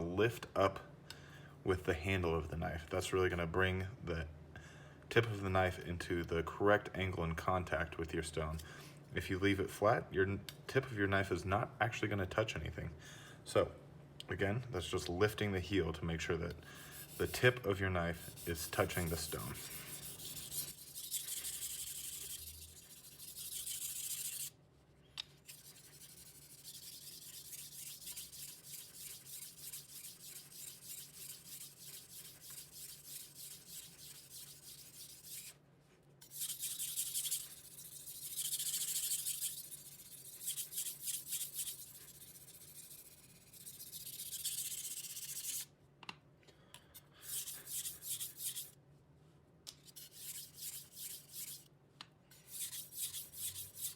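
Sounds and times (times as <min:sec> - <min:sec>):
knife scraping on whetstone: 0:18.1 - 0:24.5, 0:25.4 - 0:35.6, 0:36.2 - 0:45.6, 0:47.2 - 0:48.8, 0:49.8 - 0:51.6, 0:52.3 - 0:53.9.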